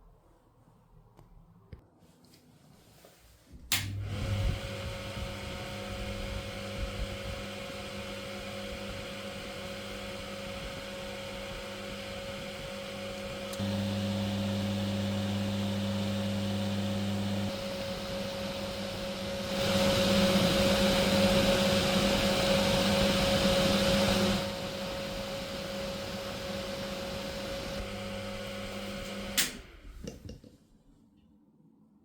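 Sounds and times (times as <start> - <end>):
power switch click: 3.7 - 4.0, 29.0 - 29.7
cooling fan running: 3.7 - 30.3.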